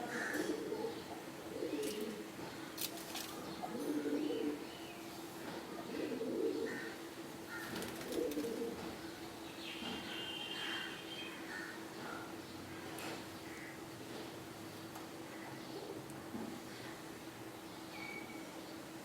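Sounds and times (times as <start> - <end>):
pigeons cooing: 0.0 - 4.7, 5.7 - 9.1, 15.6 - 16.0.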